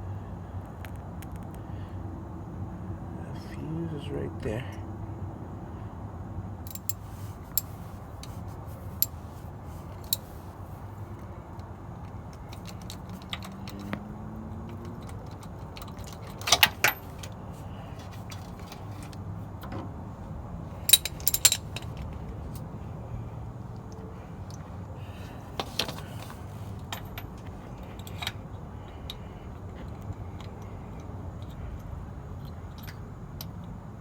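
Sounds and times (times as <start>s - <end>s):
metallic clinks of hand tools: 6.7s - 7.7s, 20.9s - 22.0s
socket ratchet clicking: 6.7s - 7.7s, 20.9s - 22.0s.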